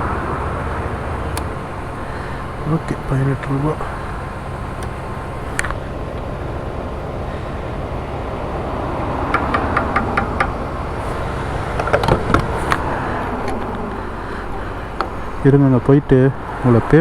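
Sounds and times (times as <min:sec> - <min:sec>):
low vehicle hum: 0:00.0 - 0:17.0
sharp knocks: 0:03.9 - 0:15.4.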